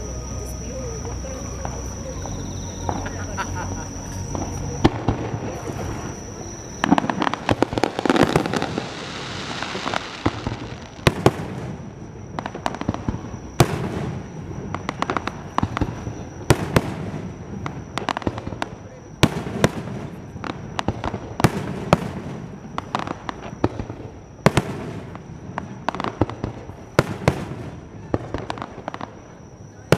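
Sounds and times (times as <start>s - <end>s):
fireworks crackling: 0.0s - 29.9s
fireworks bangs: 0.7s - 29.9s.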